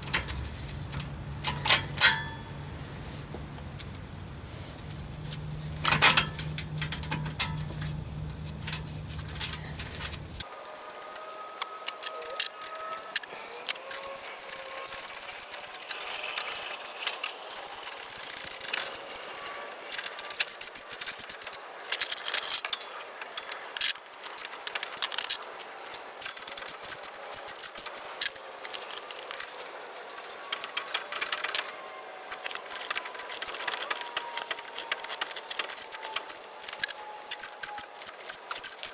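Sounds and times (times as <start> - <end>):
hand tools clicking on metal: 0.0 - 2.8, 3.5 - 10.5, 32.3 - 38.9
low steady hum: 0.0 - 10.5.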